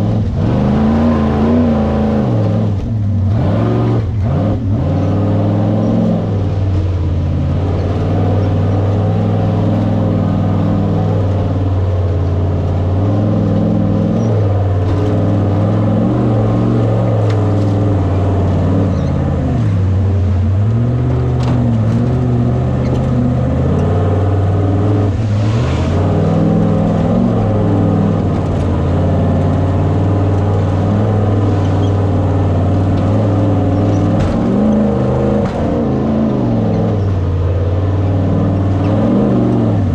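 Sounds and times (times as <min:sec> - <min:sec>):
race vehicle engine revving: 0:00.0 - 0:39.9.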